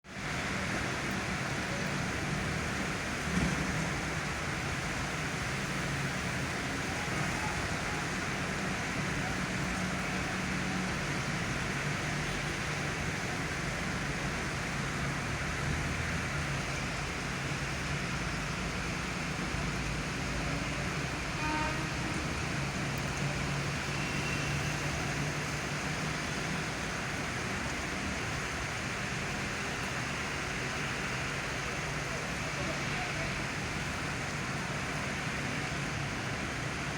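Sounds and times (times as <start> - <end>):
road traffic hum: 0.0 - 36.9
rain hissing: 0.1 - 36.9.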